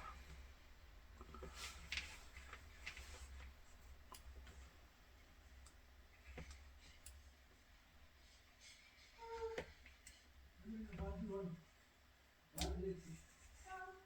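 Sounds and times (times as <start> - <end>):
faint clicks and taps: 5.6 - 7.2.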